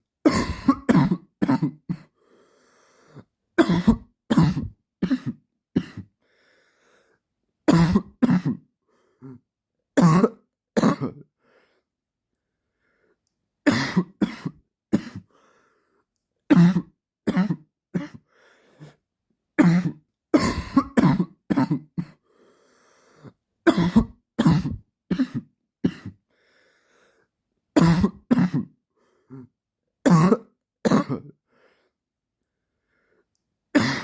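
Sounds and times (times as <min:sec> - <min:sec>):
man coughing: 0:00.3 - 0:02.1, 0:03.6 - 0:06.1, 0:07.7 - 0:08.6, 0:13.7 - 0:15.3, 0:19.6 - 0:22.2, 0:23.7 - 0:26.2, 0:30.1 - 0:31.3, 0:33.8 - 0:34.0
faint breaths: 0:02.1 - 0:03.3, 0:06.2 - 0:07.3, 0:15.3 - 0:16.1, 0:18.2 - 0:19.0, 0:22.1 - 0:23.4, 0:26.3 - 0:27.4.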